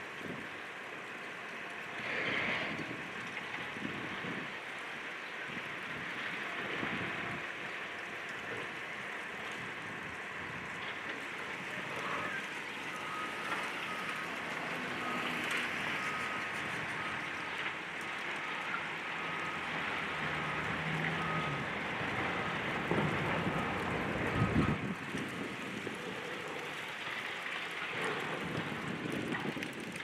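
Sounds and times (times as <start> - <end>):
demolition machinery running: 1.8 - 30.0
reverse warning beeper: 18.5 - 21.6.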